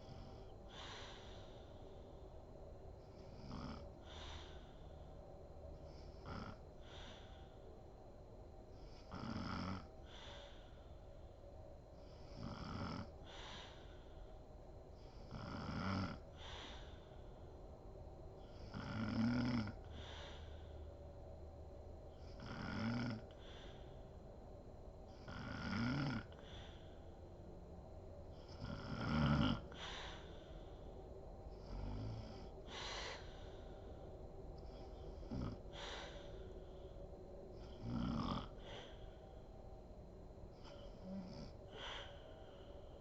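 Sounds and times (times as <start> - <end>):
soft breath: 0.0 - 9.2, 9.9 - 12.4, 13.1 - 15.3, 16.2 - 18.8, 19.7 - 22.5, 23.2 - 25.3, 26.2 - 43.0
woman snoring: 3.2 - 4.9, 5.9 - 7.3, 8.8 - 10.8, 12.0 - 14.0, 15.0 - 17.1, 18.4 - 20.7, 22.2 - 24.0, 25.1 - 27.0, 28.4 - 30.8, 31.6 - 34.0, 34.6 - 36.5, 37.6 - 39.2, 40.6 - 42.7.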